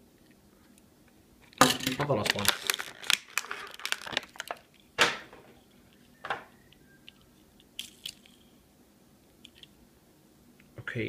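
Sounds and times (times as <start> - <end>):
plastic packaging crunching: 1.6 - 4.8.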